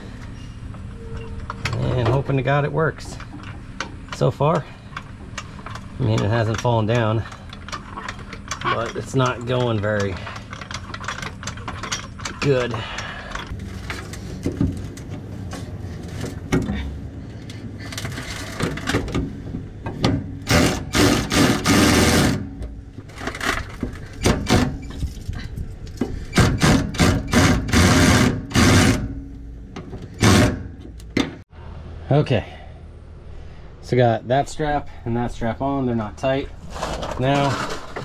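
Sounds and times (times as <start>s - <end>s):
metal clanks and scrapes: 0.2s - 31.4s, 36.3s - 38.0s.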